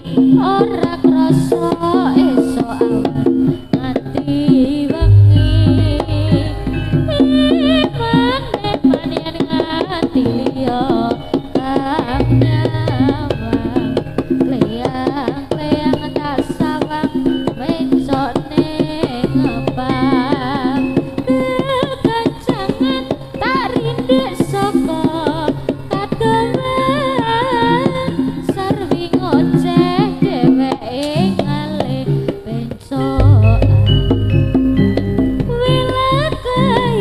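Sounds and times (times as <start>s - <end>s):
gamelan percussion: 0.0s - 37.0s
hand drums: 0.0s - 37.0s
deep low note: 5.0s - 8.1s, 12.2s - 14.8s, 33.2s - 35.6s
wavering lead melody: 5.0s - 8.8s, 12.1s - 16.6s, 33.2s - 37.0s.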